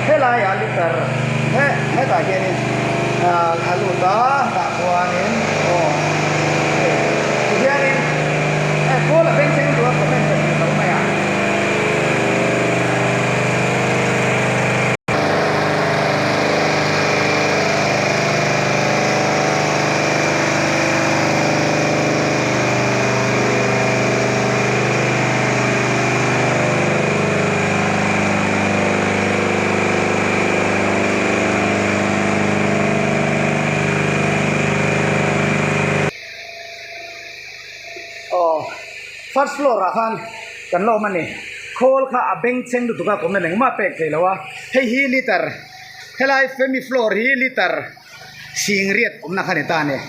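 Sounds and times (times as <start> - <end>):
engine running steadily: 0.0 - 36.2.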